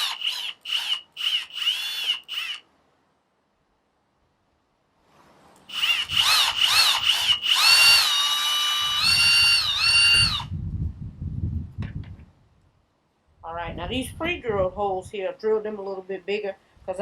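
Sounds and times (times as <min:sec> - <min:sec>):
power drill motor whine: 0:00.0 - 0:02.6, 0:05.7 - 0:10.5
low rumbling: 0:08.7 - 0:12.7.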